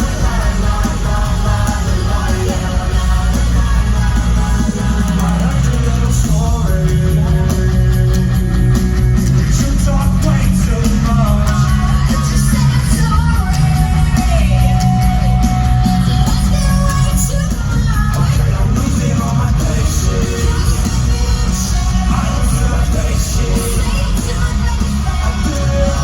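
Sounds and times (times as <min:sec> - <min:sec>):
heavy bass: 0:00.0 - 0:26.0
live rock music: 0:00.0 - 0:26.0
person singing: 0:09.4 - 0:26.0.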